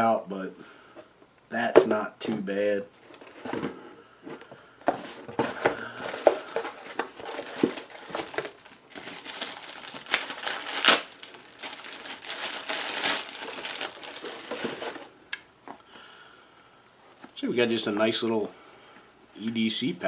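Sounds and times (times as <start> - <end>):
packaging crinkling: 5.3 - 15.2.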